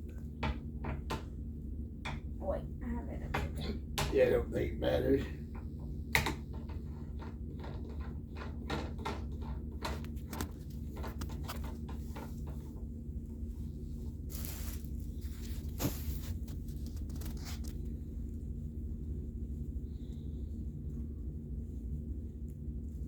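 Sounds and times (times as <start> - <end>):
steady low hum: 0.0 - 23.0
rustling: 10.1 - 23.0.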